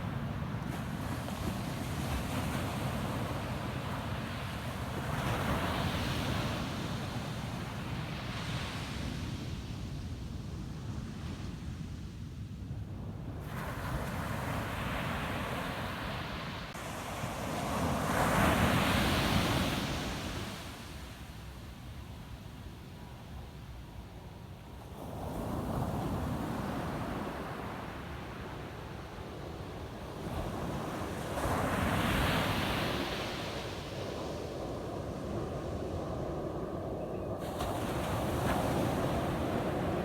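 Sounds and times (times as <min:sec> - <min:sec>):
ocean waves breaking on beach: 0:00.0 - 0:09.8, 0:13.4 - 0:21.7, 0:24.8 - 0:40.0
low rumble of surf: 0:00.0 - 0:40.0.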